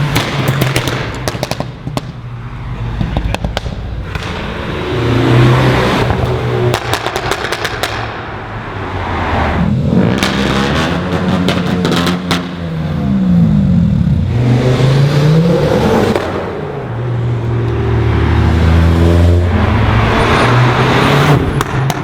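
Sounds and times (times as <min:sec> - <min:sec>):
race cars passing: 0:00.0 - 0:22.0
exhaust pops and crackles: 0:00.1 - 0:02.2, 0:03.0 - 0:04.6, 0:06.0 - 0:08.2, 0:21.5 - 0:22.0
car accelerating: 0:02.4 - 0:22.0.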